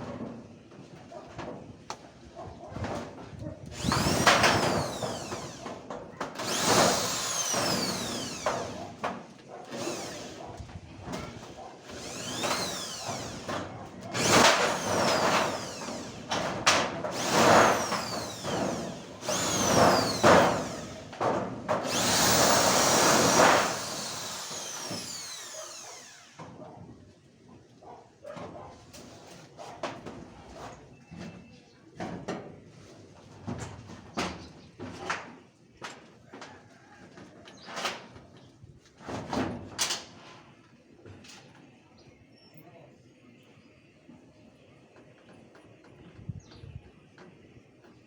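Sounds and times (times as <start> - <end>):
power tool motor whirring: 3.7 - 9.1, 9.7 - 21.2, 21.8 - 26.4.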